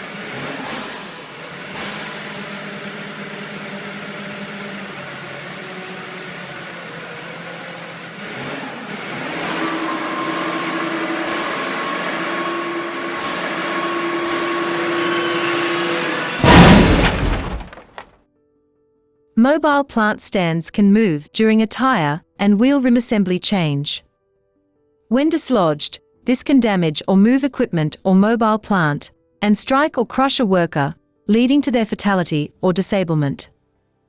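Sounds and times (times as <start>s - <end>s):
heavy machinery humming: 9.6s - 18.0s
loud crash: 16.4s - 18.0s.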